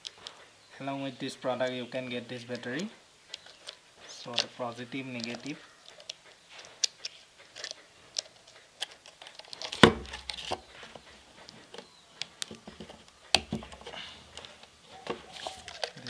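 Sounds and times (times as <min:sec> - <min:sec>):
plastic case clicks and taps: 0:09.8 - 0:10.6.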